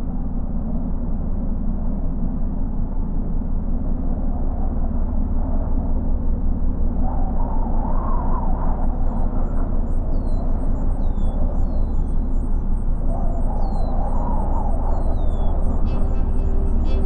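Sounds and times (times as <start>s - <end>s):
low outdoor rumble: 9.0s - 17.0s.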